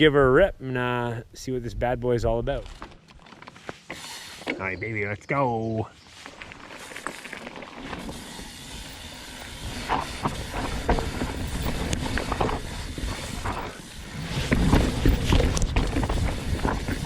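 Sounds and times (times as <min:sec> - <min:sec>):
bike tyres rolling on dirt: 0:01.9 - 0:04.9, 0:05.6 - 0:17.0
bike clicks and rattles: 0:02.5 - 0:04.6, 0:06.2 - 0:17.0.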